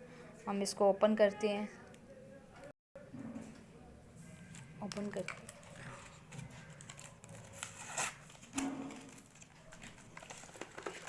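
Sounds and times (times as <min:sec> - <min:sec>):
packaging crinkling and tearing: 0:04.9 - 0:11.0.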